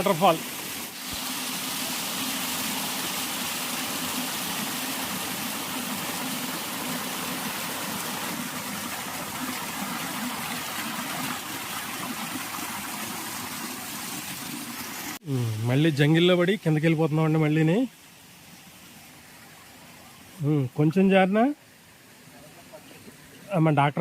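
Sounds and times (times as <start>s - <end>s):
waterfall pouring onto rocks: 0.0s - 15.2s.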